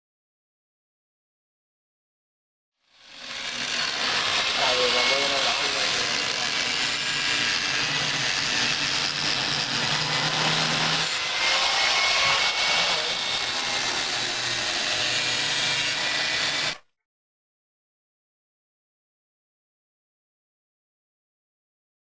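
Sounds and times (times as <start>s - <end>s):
angle grinder grinding metal: 2.9s - 16.8s.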